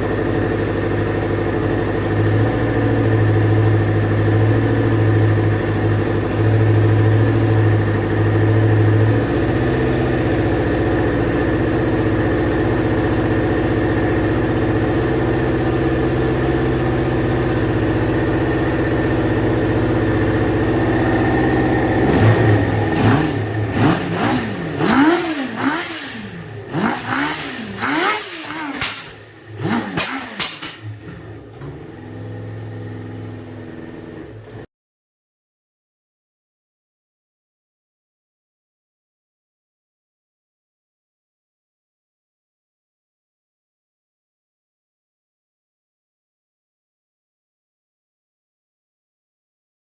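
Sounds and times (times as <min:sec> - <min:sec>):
motorcycle engine idling and revving: 0:00.0 - 0:34.7.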